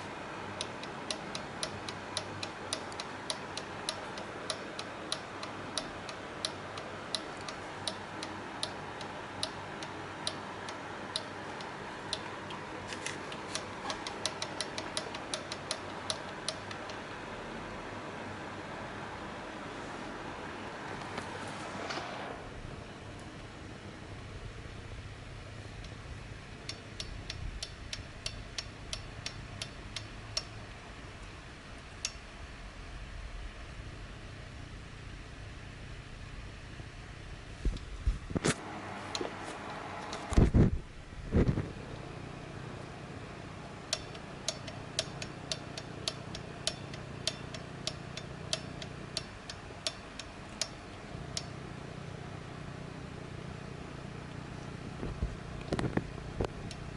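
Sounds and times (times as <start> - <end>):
speedometer gear clicking: 0.0 - 17.0, 26.6 - 30.6, 43.9 - 51.5
low steady rumble: 0.0 - 56.9.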